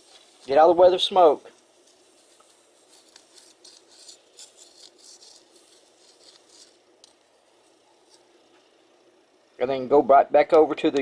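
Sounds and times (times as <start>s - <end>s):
soldering tip scraping metal: 2.3s - 8.7s.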